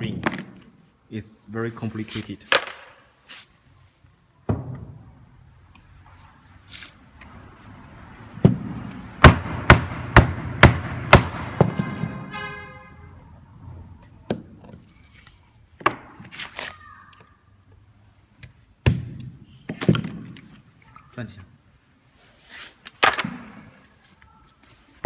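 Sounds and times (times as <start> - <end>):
hammer knocking on steel parts: 8.4 - 12.4.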